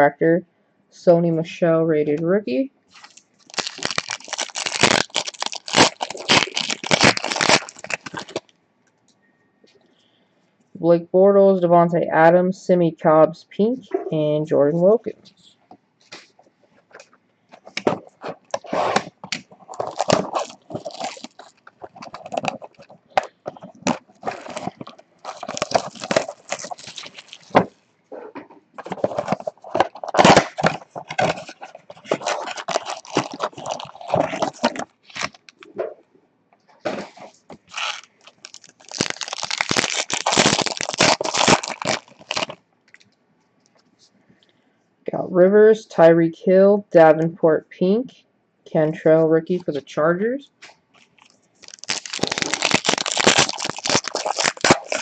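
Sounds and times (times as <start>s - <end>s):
wrappers torn and crinkled: 2.9s - 8.5s, 18.0s - 27.8s, 28.8s - 35.7s, 37.0s - 43.0s, 51.0s - 55.0s.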